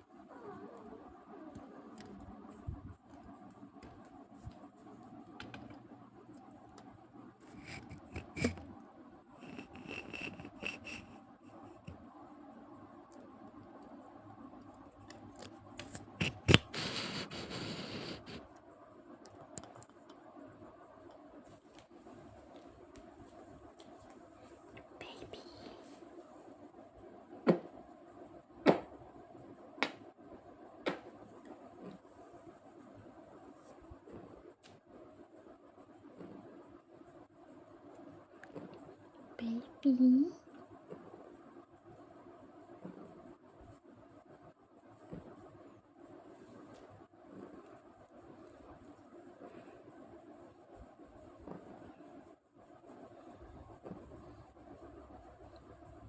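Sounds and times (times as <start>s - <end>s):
cat snoring: 0.3s - 2.7s, 7.5s - 8.6s, 9.4s - 11.9s, 16.2s - 18.4s, 42.8s - 43.3s.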